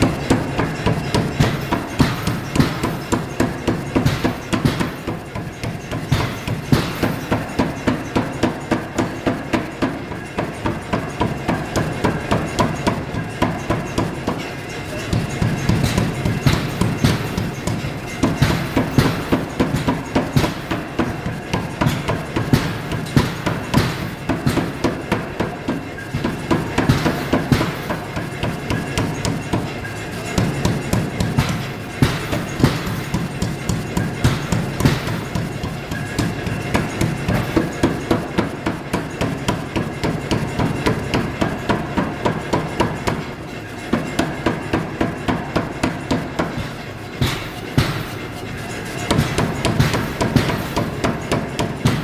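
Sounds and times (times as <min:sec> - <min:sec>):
trip hammer striking hot metal: 0:00.0 - 0:52.0.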